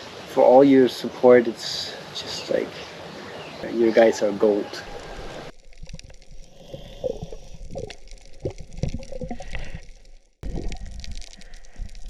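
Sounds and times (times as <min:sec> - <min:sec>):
water gurgling and sloshing: 0:04.7 - 0:12.0
pops and clicks: 0:05.5 - 0:12.0.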